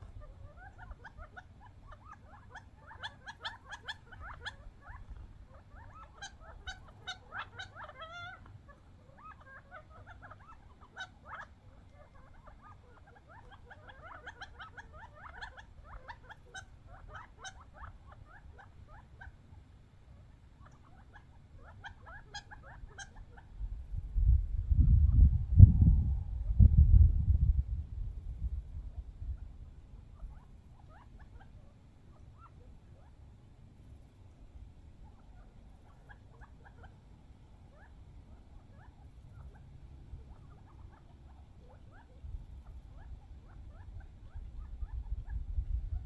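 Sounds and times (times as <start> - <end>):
quail chirping: 0.0 - 33.2, 33.8 - 34.4, 35.0 - 46.0.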